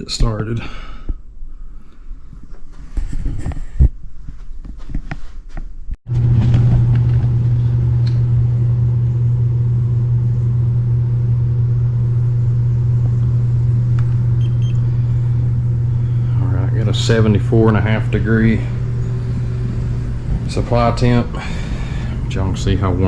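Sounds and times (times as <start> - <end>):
heat pump humming: 6.1 - 23.0.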